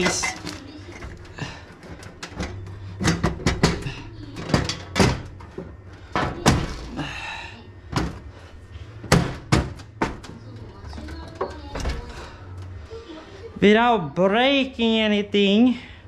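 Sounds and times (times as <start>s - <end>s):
panel knocks and thunks: 2.3s - 6.8s, 9.0s - 10.4s.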